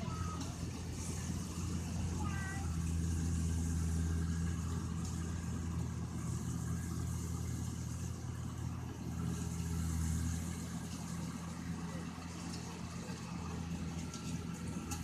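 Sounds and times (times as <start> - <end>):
combine harvester engine running: 0.0 - 15.0.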